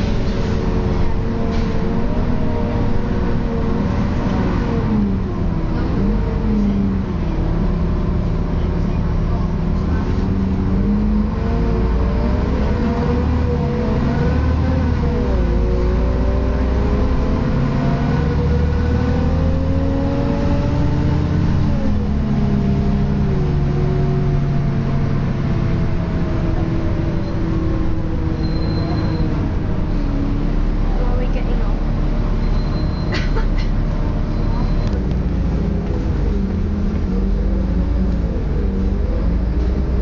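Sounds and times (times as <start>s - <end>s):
bus drivetrain rumble: 0.0s - 40.0s.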